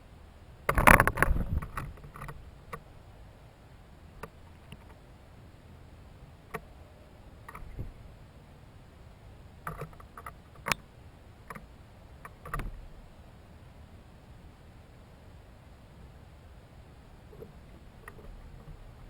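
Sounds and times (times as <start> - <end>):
faint steady background noise: 0.0 - 19.0
light knocks and clicks: 0.7 - 2.9, 7.5 - 8.0, 9.7 - 10.8, 11.5 - 12.8, 17.3 - 19.0.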